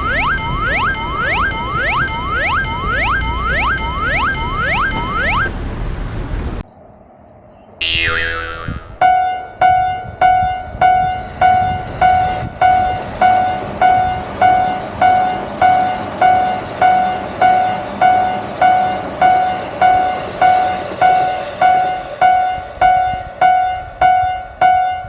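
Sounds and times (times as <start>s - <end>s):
railroad crossing bell ringing: 0.0s - 5.5s.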